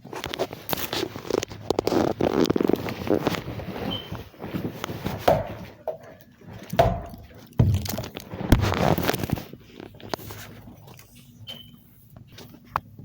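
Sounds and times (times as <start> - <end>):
thumps: 3.8 - 9.3.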